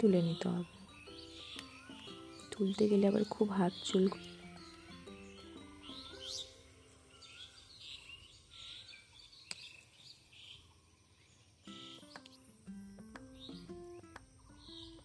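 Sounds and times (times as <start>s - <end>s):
background music: 0.0s - 9.0s, 11.7s - 15.0s
faint bird chirps: 0.0s - 15.0s.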